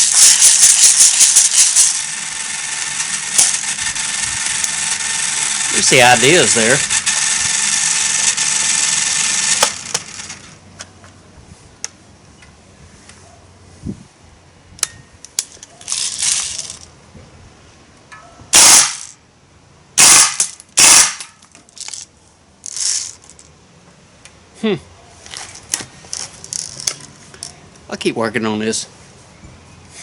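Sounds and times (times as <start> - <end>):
air rifle full-auto bursts: 0.0 - 10.4, 18.6 - 19.1, 20.0 - 21.3
loud steady noise: 0.0 - 10.6, 18.5 - 19.2, 20.0 - 21.4.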